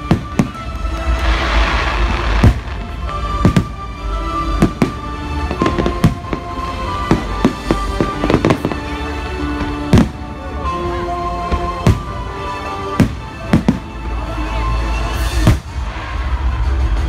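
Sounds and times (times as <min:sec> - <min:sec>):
fireworks bangs: 0:00.0 - 0:09.0
music with sustained tones: 0:00.0 - 0:17.0.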